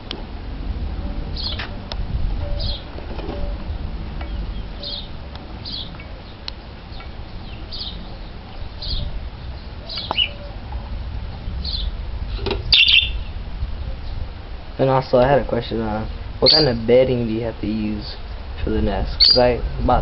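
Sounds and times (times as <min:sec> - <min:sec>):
steady low rumble: 0:00.0 - 0:20.0
parrots chirping: 0:02.4 - 0:14.2, 0:16.1 - 0:16.8, 0:19.2 - 0:19.5.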